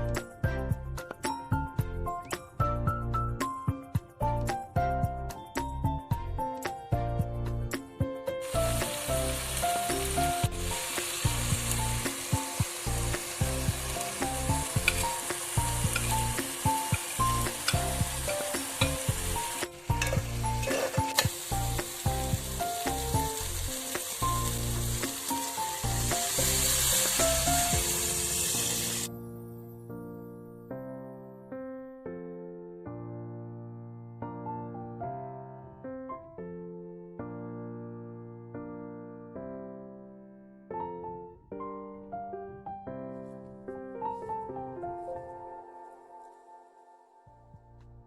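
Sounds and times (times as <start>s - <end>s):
light background melody: 0.0s - 48.0s
food sizzling in hot oil: 8.4s - 29.1s.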